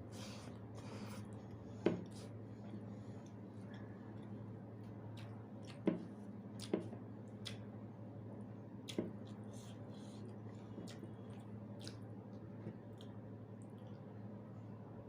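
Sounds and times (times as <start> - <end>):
steady low hum: 0.0 - 15.0
wet mouth eating sounds: 5.1 - 7.7, 8.8 - 14.1.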